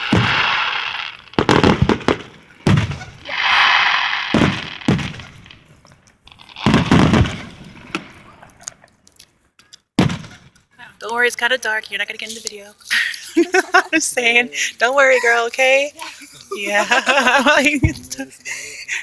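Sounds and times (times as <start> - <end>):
fireworks booming: 0.0 - 8.9, 10.0 - 11.3, 13.2 - 18.6
fireworks crackling: 0.0 - 9.3, 10.0 - 19.0.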